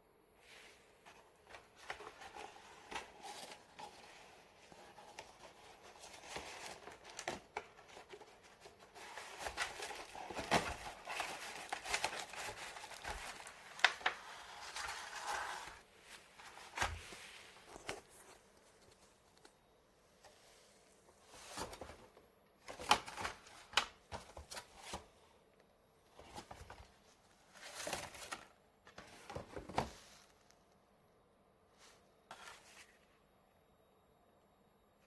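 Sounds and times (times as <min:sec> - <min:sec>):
packaging rustling and crinkling: 0:01.0 - 0:19.6, 0:26.1 - 0:30.6.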